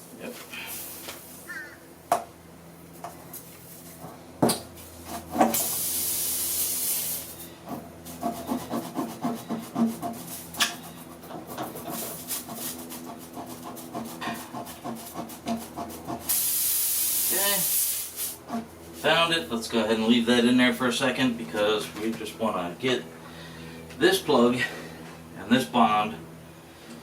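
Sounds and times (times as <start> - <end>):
air hissing: 5.5 - 7.5, 16.3 - 18.4
tool scraping in rubber: 7.7 - 16.4.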